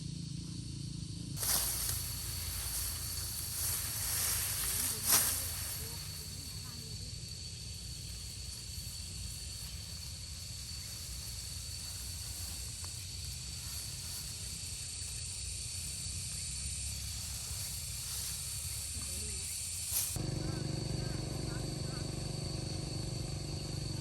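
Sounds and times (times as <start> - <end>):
outdoor background hiss: 0.0 - 24.0
constant high-pitched tone: 17.2 - 24.0.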